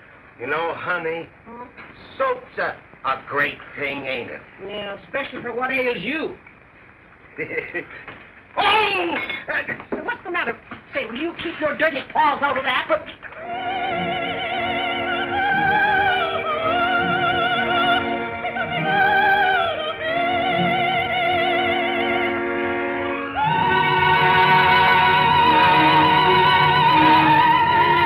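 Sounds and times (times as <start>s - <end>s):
operatic singing with vibrato: 13.3s - 28.0s
orchestral accompaniment: 13.4s - 28.0s.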